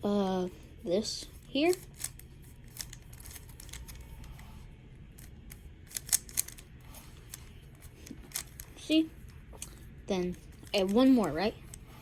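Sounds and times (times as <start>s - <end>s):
puzzle cube clicking as turned: 1.7s - 4.4s, 5.1s - 8.7s.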